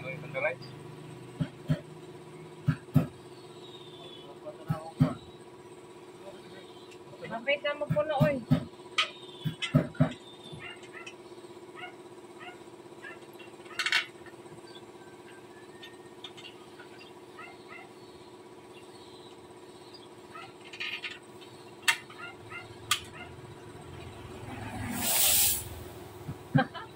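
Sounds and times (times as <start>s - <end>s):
air compressor humming: 0.2s - 26.9s
hissy bursts: 24.6s - 26.1s.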